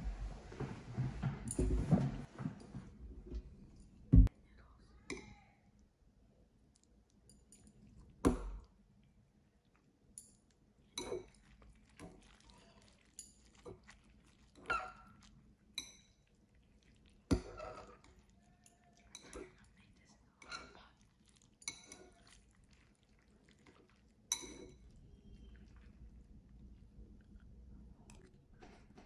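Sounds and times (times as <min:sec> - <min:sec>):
chewing: 0:09.0 - 0:28.4.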